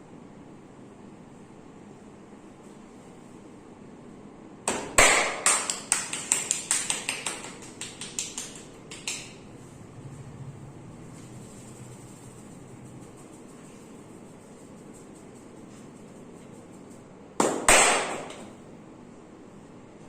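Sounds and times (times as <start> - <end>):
hands slapping bare skin: 4.7 - 9.4.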